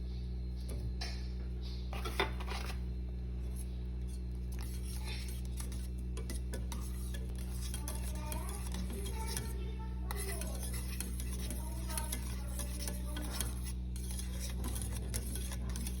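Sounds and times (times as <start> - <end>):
steady low hum: 0.0 - 16.0
utensils and dishes clinking: 5.0 - 16.0.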